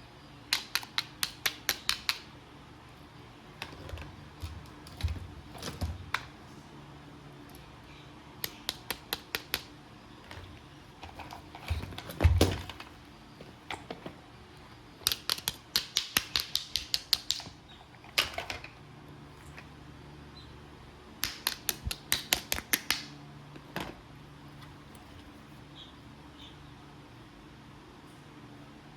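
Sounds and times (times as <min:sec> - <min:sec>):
sharp hard clicks: 0:00.5 - 0:02.4, 0:08.4 - 0:09.7, 0:15.0 - 0:18.7, 0:21.2 - 0:23.1.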